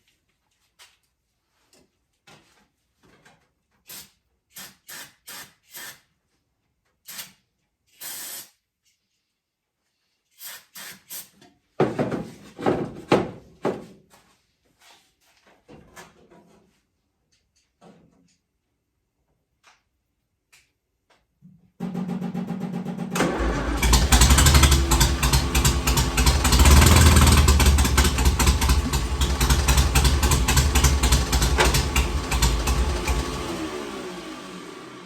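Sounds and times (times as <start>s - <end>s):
loud rumbling clatter: 23.2s - 33.5s.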